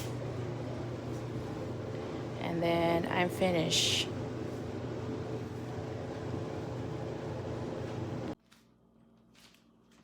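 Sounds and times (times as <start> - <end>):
clothes dryer running: 0.0 - 8.4.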